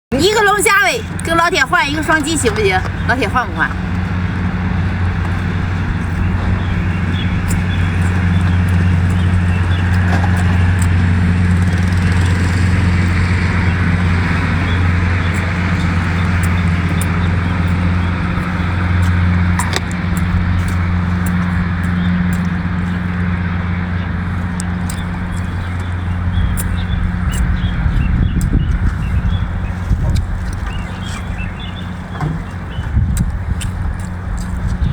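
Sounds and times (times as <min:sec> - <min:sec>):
engine droning: 0:00.1 - 0:34.9
sharp clicks and crunches: 0:15.2 - 0:23.0, 0:24.5 - 0:27.6, 0:32.2 - 0:34.9.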